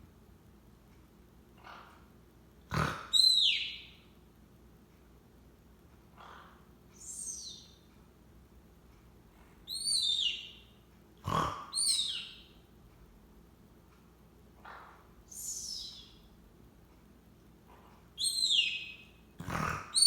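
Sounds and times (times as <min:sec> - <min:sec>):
parrot squeaking: 0:03.1 - 0:04.0, 0:07.0 - 0:07.8, 0:09.7 - 0:10.6, 0:11.7 - 0:12.5, 0:14.6 - 0:16.2, 0:18.2 - 0:19.1.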